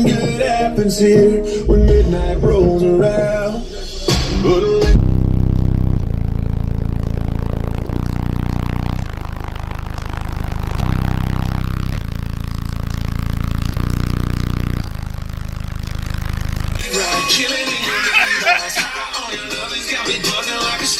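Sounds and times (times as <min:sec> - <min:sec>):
loud deep bass notes: 0:00.7 - 0:16.9
buzzing rattle: 0:05.2 - 0:16.9.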